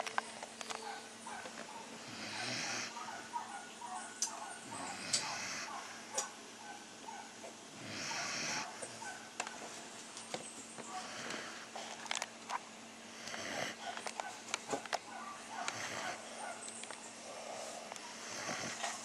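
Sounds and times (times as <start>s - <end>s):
pet snoring: 2.0s - 3.2s, 4.6s - 6.0s, 7.8s - 9.0s, 10.9s - 11.8s, 13.1s - 14.0s, 15.5s - 16.6s, 17.2s - 19.0s.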